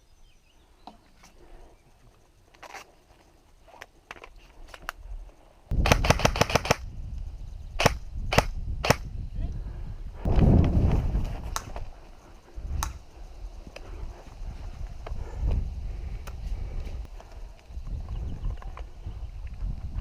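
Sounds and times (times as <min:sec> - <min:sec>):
airsoft guns firing: 0:05.8 - 0:06.8
low rumble on microphone: 0:17.7 - 0:20.0.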